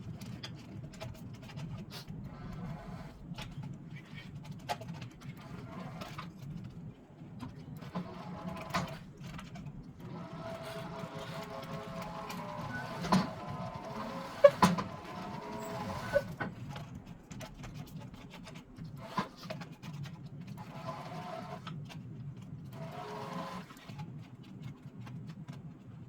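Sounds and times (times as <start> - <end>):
low mechanical hum: 0.0 - 26.0
spool whining: 10.0 - 16.5.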